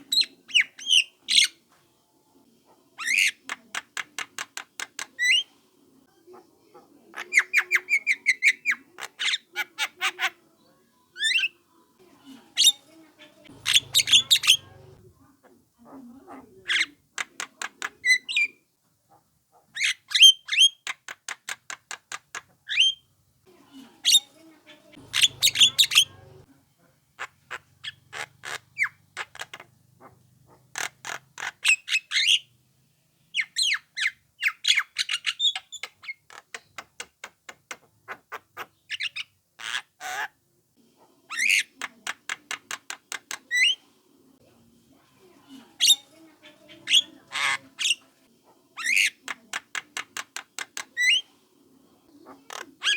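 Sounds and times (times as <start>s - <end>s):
myna calling with harsh clicks: 27.2s - 32.4s, 41.3s - 43.8s, 48.8s - 51.3s.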